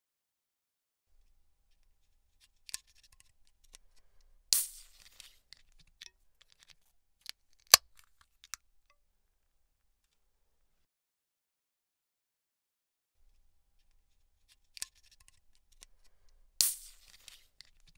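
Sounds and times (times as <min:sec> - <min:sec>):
can opening with hiss: 0:04.6 - 0:05.4, 0:16.6 - 0:17.6
can pull tab clicks: 0:07.7 - 0:08.6.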